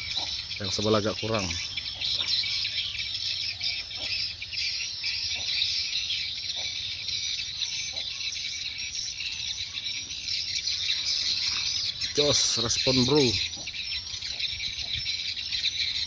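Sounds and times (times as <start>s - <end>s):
swiftlets twittering: 0.0s - 3.6s, 7.3s - 16.0s.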